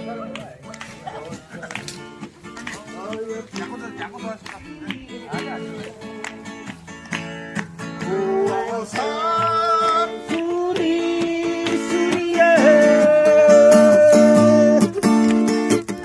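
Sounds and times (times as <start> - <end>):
acoustic guitar strumming: 0.0 - 16.0
person singing long notes: 8.0 - 15.2.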